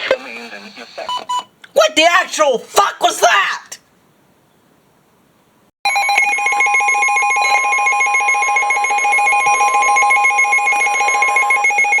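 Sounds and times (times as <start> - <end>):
pulsing alarm tone: 5.9 - 12.0.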